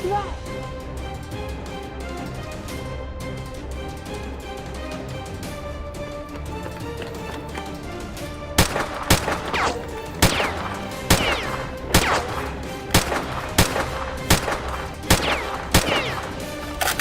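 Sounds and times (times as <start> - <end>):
background music: 0.0 - 17.0
gunshot sound effects: 8.6 - 16.5.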